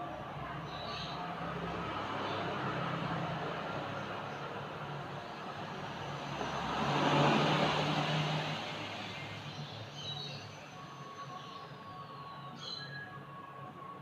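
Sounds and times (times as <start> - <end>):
vehicle passing by: 0.9 - 9.9.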